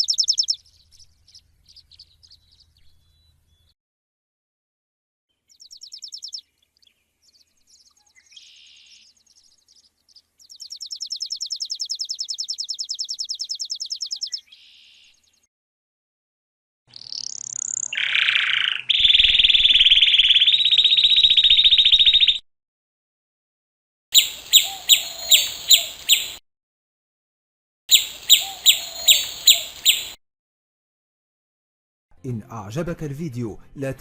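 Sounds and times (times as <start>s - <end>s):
sparrow chirping trills: 0.0s - 3.8s, 5.3s - 15.5s, 16.9s - 22.4s, 24.2s - 26.4s, 27.9s - 30.2s.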